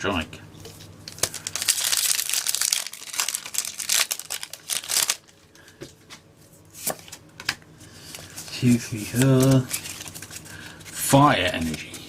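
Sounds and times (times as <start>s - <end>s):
foil wrapper crinkling: 1.0s - 5.4s, 8.1s - 12.0s.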